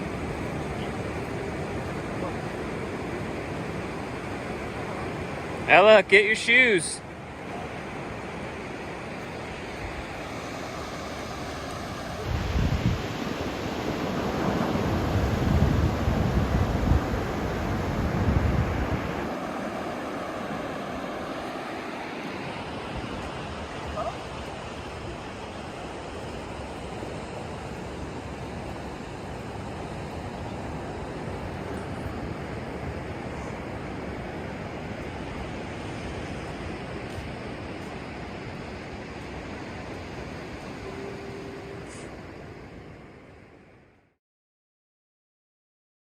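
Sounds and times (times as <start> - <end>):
ocean surf washing: 0.0 - 43.8
wind buffeting microphone: 7.9 - 38.7.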